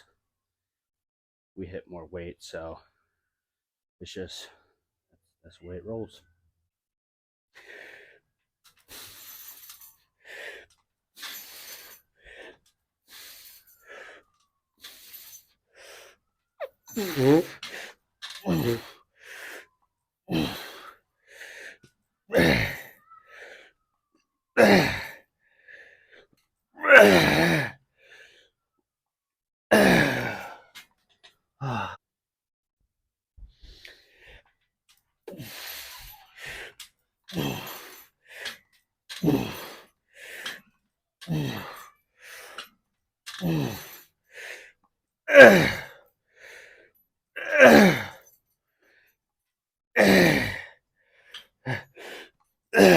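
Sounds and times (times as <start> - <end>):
man groaning and exhaling: 16.6 - 19.0, 20.3 - 21.0, 22.3 - 23.7, 24.6 - 25.2, 26.8 - 27.8, 29.7 - 30.8, 31.6 - 32.0, 35.3 - 36.7, 37.3 - 38.5, 39.1 - 40.6, 41.2 - 42.6, 43.3 - 44.0, 45.3 - 46.0, 47.4 - 48.2, 50.0 - 50.7.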